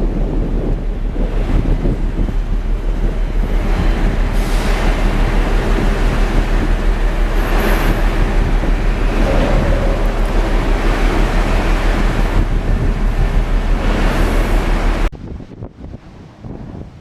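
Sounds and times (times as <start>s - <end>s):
storm rushing noise: 0.0s - 15.7s
loud low rumble: 8.0s - 14.0s.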